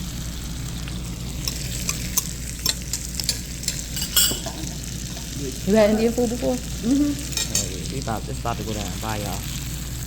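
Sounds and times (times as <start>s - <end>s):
steady background hum: 0.0s - 10.0s
utensils clicking against plates: 1.4s - 5.4s, 7.2s - 7.8s.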